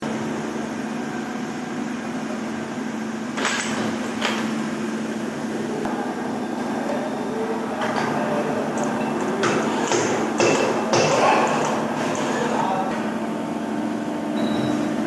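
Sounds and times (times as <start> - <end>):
workshop machinery humming: 0.0 - 15.0.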